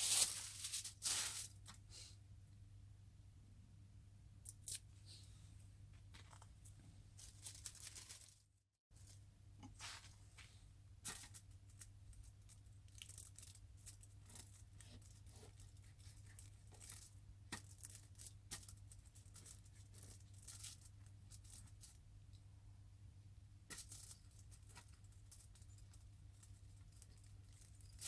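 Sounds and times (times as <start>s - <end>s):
rustling and crinkling: 0.0s - 1.8s, 5.9s - 22.0s, 23.7s - 28.0s.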